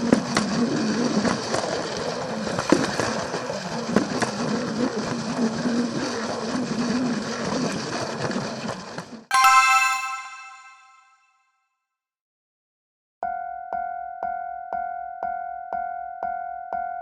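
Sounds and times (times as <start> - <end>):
glockenspiel-like chime: 9.3 - 11.1.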